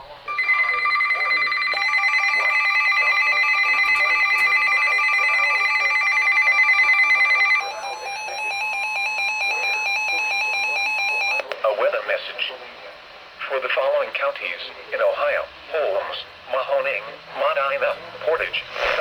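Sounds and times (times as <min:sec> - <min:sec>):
pulsing electronic ringing tone: 0:00.3 - 0:11.4
steady electronic alarm tone: 0:00.3 - 0:11.4.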